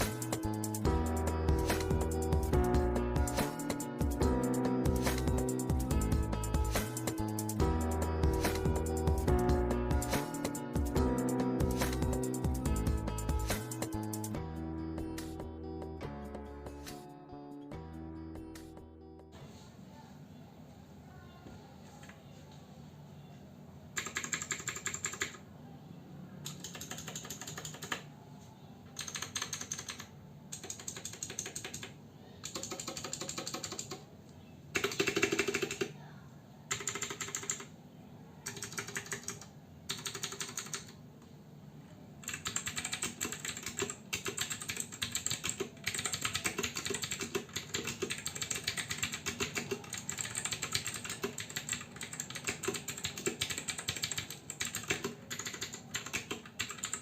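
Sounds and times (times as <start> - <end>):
clicky mechanical keyboard typing: 24.0 - 25.4, 26.4 - 28.1, 28.9 - 34.1, 34.7 - 36.0, 36.7 - 37.7, 38.4 - 41.0, 42.2 - 57.0.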